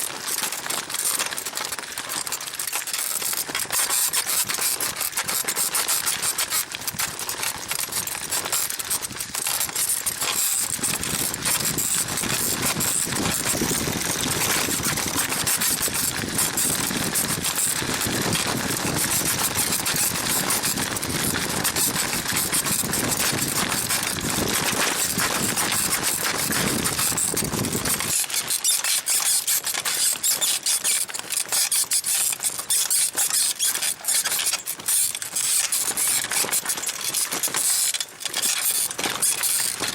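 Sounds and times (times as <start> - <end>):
bicycle saddle springs squeaking: 8.5 - 24.4, 25.0 - 39.8.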